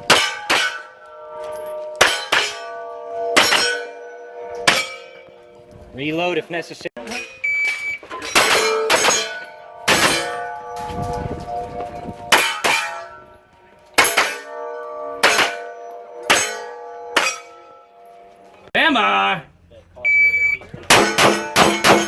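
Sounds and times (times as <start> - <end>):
steel target ringing: 0.0 - 6.4, 7.0 - 18.7, 20.9 - 22.0
gunshots: 20.9 - 22.0.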